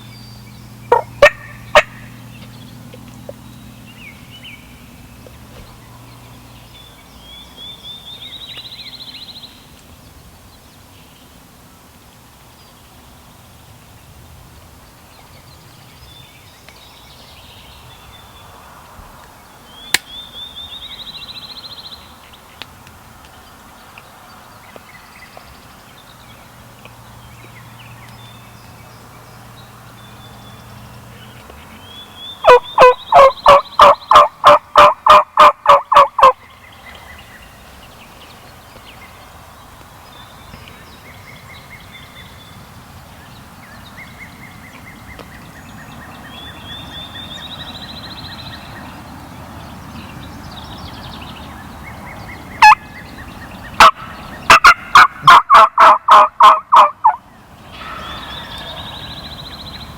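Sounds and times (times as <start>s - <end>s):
turkey yelping: 0.9s - 2.1s, 32.4s - 36.4s, 52.6s - 52.8s, 53.8s - 57.2s.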